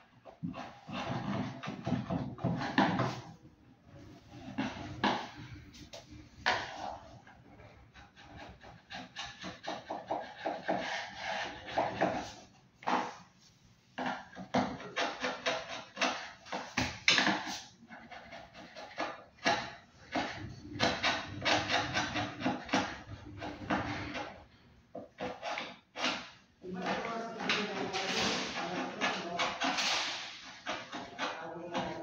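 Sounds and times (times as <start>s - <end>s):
rubbing and scraping on a floor: 0.0s - 32.0s.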